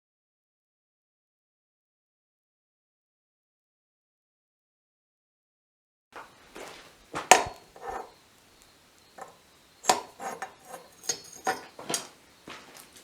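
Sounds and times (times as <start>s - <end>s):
hard objects knocking and clattering: 6.2s - 8.2s, 9.1s - 13.0s.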